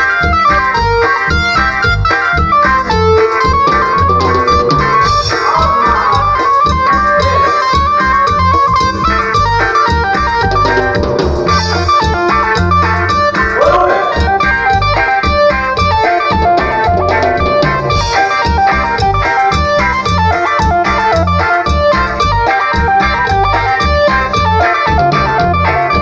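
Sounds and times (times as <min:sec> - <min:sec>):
bass: 0:00.0 - 0:26.0
drum kit: 0:00.0 - 0:26.0
guitar melody of quick notes: 0:01.4 - 0:19.4.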